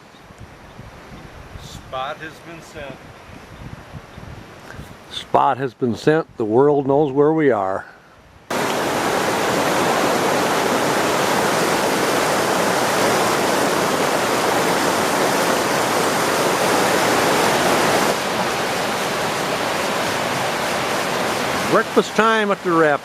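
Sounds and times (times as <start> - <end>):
river rapids rushing: 8.5 - 23.0.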